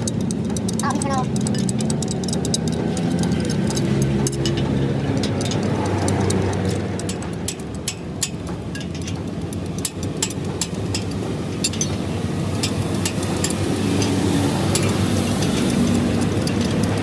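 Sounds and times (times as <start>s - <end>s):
vehicle engine running: 0.0s - 17.0s.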